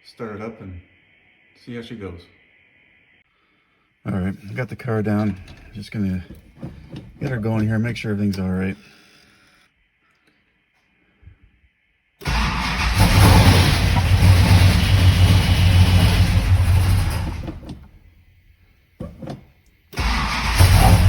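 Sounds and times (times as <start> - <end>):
car engine starting and running: 5.1 - 8.4, 12.2 - 18.1, 19.0 - 21.0
engine cranking: 5.1 - 8.4, 12.2 - 18.1, 19.0 - 21.0.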